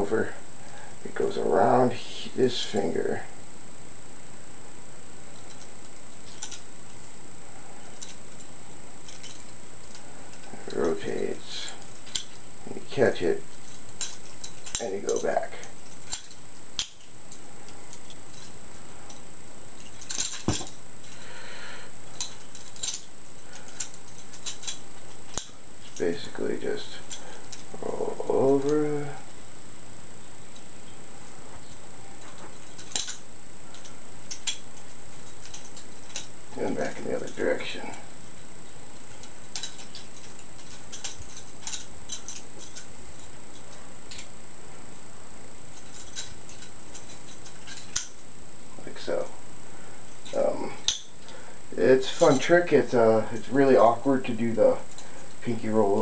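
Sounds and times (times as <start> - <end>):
high-pitched whine: 0.0 - 56.0
butterfly knife clicking: 32.8 - 33.2.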